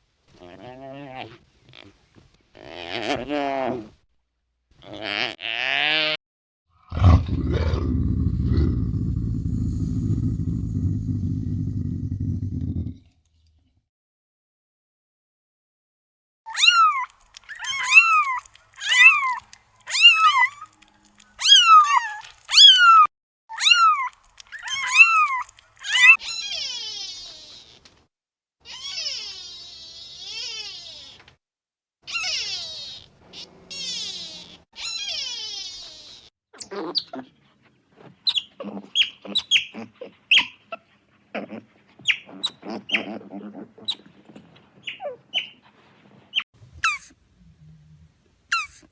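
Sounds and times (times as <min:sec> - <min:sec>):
high-pitched animal calls: 0:06.9 - 0:12.2, 0:16.5 - 0:27.9, 0:28.7 - 0:31.3, 0:32.1 - 0:37.3, 0:38.2 - 0:45.6
cat meowing: 0:28.7 - 0:31.3, 0:32.1 - 0:36.3.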